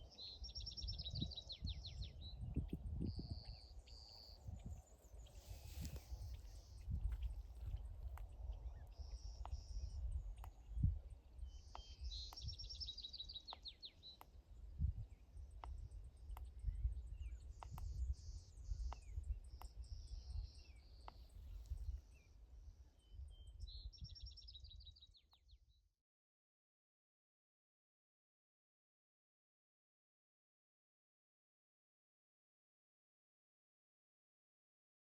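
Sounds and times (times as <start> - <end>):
birds chirping: 0.1 - 25.5.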